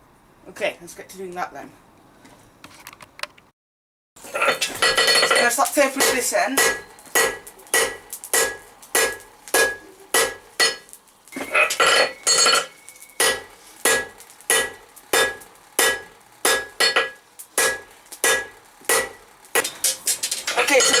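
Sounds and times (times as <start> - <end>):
hammer striking steel on anvil: 4.5 - 21.0.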